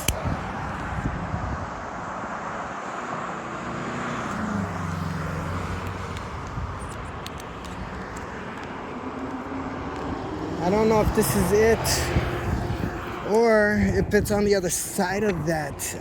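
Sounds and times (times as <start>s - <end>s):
road traffic passing: 0.0s - 16.0s
vehicle engine passing: 3.0s - 16.0s.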